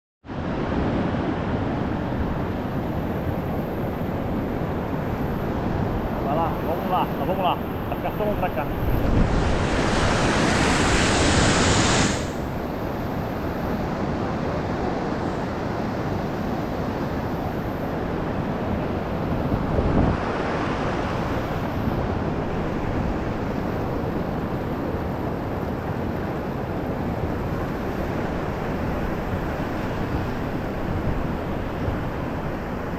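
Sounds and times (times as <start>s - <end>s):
fast-flowing water: 0.3s - 16.9s
wind on microphone: 0.3s - 32.9s.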